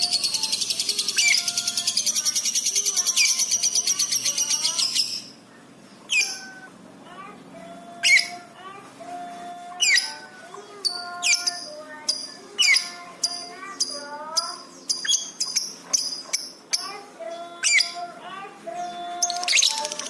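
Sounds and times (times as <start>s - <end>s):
bird chirping sharply: 0.0s - 5.4s, 6.0s - 6.7s, 7.9s - 8.5s, 9.6s - 18.1s, 18.7s - 20.0s
whistled bird notes: 6.1s - 6.7s, 7.7s - 8.4s, 9.0s - 18.0s, 18.7s - 20.0s.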